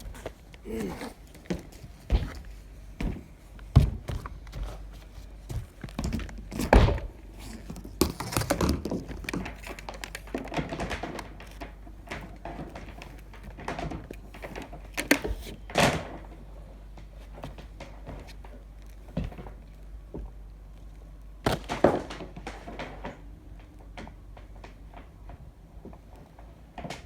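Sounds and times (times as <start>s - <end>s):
knocks and thuds on wood: 3.0s - 4.7s, 21.4s - 23.2s.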